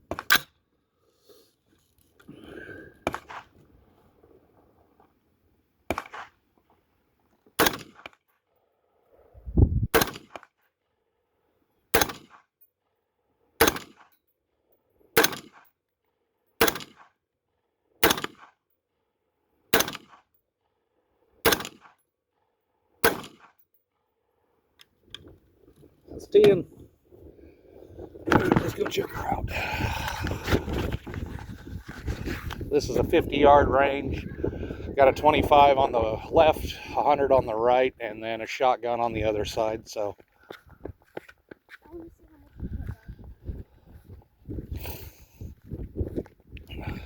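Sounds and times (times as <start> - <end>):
rifle single shots: 7.6 - 8.2, 9.9 - 10.4, 11.9 - 12.4, 13.6 - 14.0, 15.2 - 15.6, 16.6 - 17.1, 18.0 - 18.5, 19.7 - 20.2, 21.4 - 21.9, 23.0 - 23.5.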